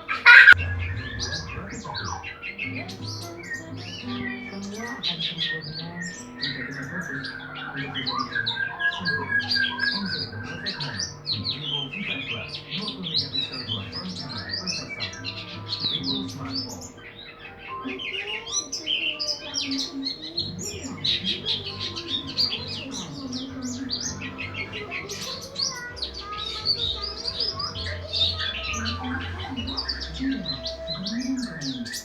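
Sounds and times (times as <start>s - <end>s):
birds chirping rapidly: 0.0s - 32.0s
low steady hum: 0.5s - 14.4s.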